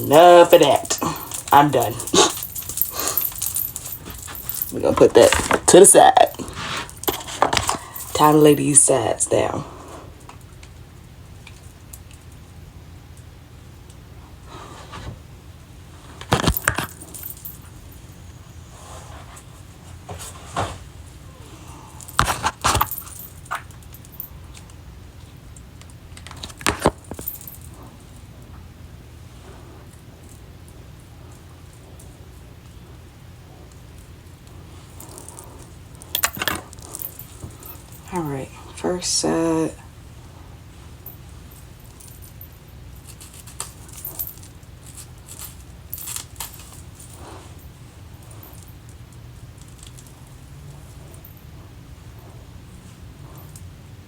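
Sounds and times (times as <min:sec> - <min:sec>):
short rustles: 0:00.0 - 0:08.6
steady low hum: 0:00.0 - 0:54.0.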